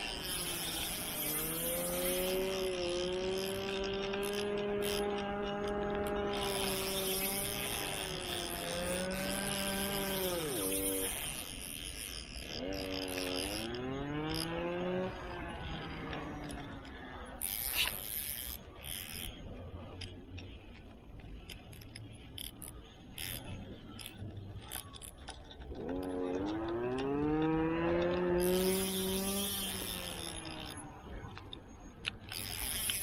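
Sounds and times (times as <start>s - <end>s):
passing engine speeding up: 13.4s - 16.8s, 25.7s - 31.0s.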